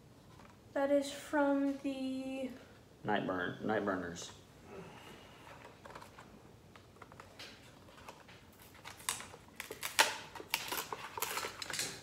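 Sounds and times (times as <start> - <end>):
packaging crinkling: 5.5 - 12.0
plastic packaging snaps: 8.2 - 12.0.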